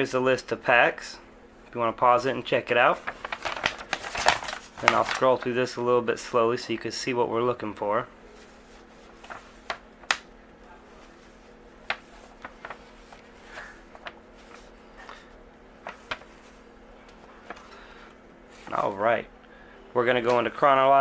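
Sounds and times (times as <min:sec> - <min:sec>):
low room hum: 0:00.0 - 0:21.0
paper and card packs rustling: 0:02.5 - 0:05.8, 0:08.3 - 0:19.2.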